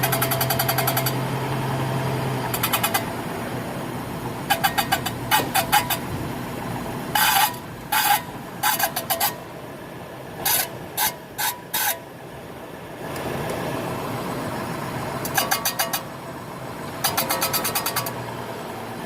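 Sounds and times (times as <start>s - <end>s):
car squeaking: 0.0s - 1.3s, 2.2s - 3.3s, 4.4s - 6.3s, 7.1s - 9.5s, 10.4s - 12.1s, 15.2s - 18.4s
low car running noise: 0.0s - 19.0s.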